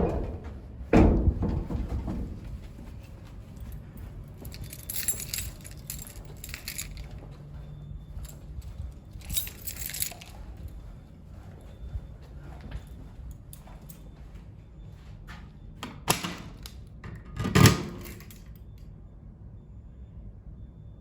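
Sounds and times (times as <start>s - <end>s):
faint low hum: 0.0s - 21.0s
rustling clinking handling noise: 2.8s - 14.2s, 17.7s - 18.6s.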